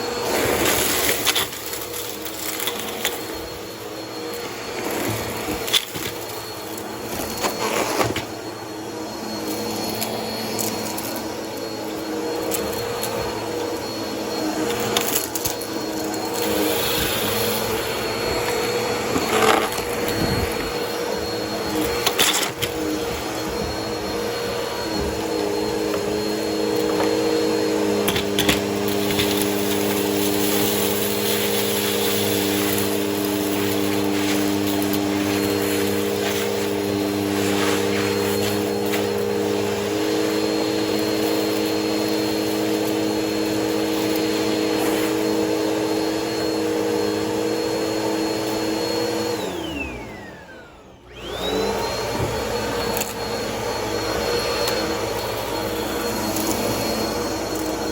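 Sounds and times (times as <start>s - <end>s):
vacuum cleaner motor hum: 0.0s - 57.9s
vacuum sucking up gritty debris: 0.0s - 57.9s.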